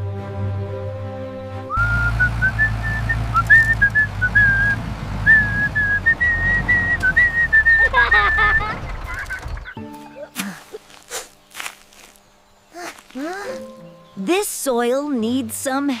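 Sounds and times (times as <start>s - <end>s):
person whistling a tune: 1.7s - 7.9s
low steady rumble: 1.7s - 9.7s.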